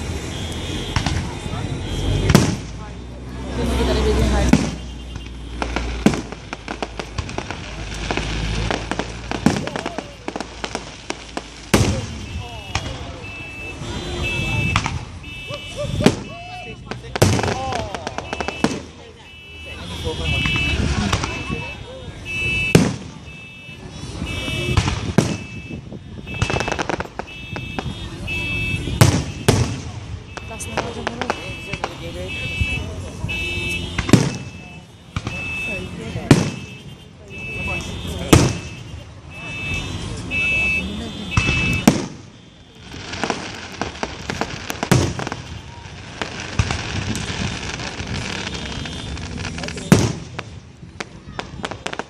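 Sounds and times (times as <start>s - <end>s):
firework bangs: 0.0s - 52.0s
firework crackles: 0.0s - 52.0s
crackling hiss: 4.4s - 13.8s
high alarm tone: 12.2s - 15.8s.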